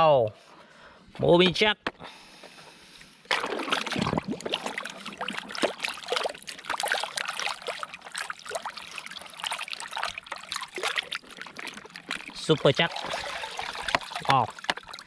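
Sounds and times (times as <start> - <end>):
water trickling and splashing: 3.2 - 15.0.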